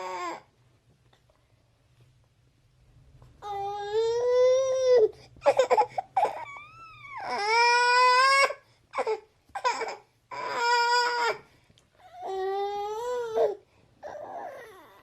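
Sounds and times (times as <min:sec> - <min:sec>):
baby-like crying: 0:00.0 - 0:00.5, 0:03.4 - 0:15.0.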